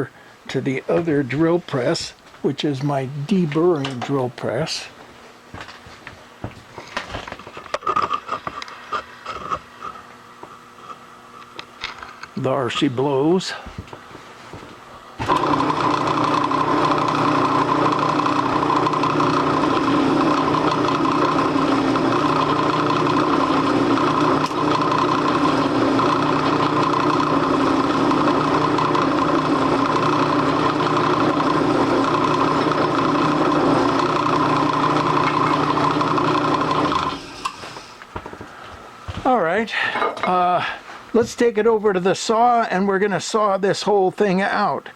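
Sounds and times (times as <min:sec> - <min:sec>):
deburring tool cutting metal: 0:15.2 - 0:37.6
drill press running: 0:15.2 - 0:38.0.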